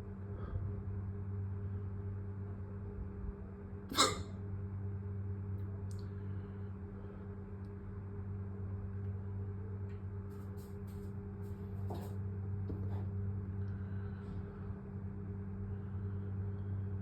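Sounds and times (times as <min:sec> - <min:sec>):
steady low hum: 0:00.0 - 0:17.0
person hiccuping: 0:03.9 - 0:04.3.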